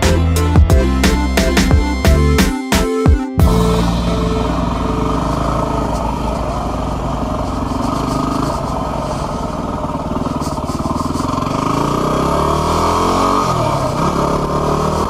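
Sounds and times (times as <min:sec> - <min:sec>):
motorcycle engine running: 0:03.4 - 0:15.0.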